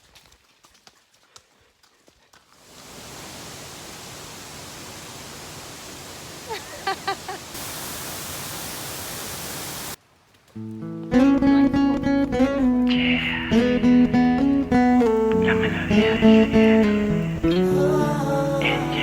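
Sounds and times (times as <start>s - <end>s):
waterfall roaring: 2.6s - 10.0s, 15.0s - 17.5s.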